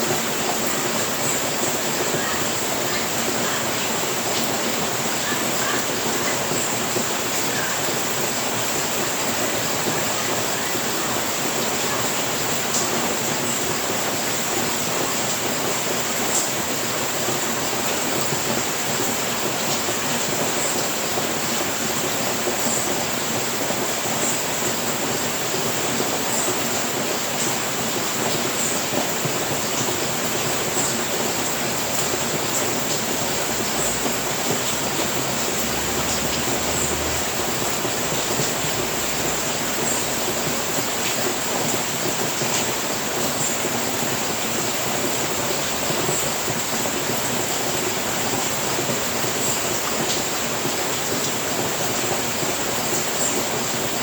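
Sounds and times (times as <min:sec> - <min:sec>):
steady rain: 0:00.0 - 0:54.0.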